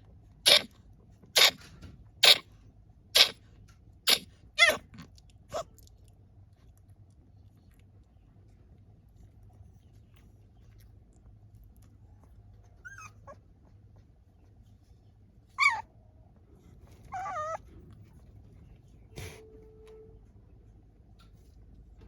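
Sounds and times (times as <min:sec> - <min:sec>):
puppy whining: 0:00.5 - 0:00.7, 0:04.1 - 0:05.8, 0:12.1 - 0:14.6, 0:15.5 - 0:16.0, 0:16.8 - 0:18.3.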